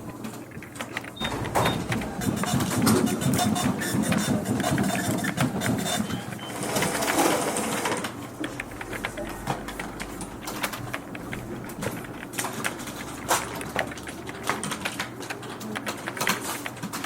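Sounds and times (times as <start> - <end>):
machine chattering clicks: 0.0 - 17.0.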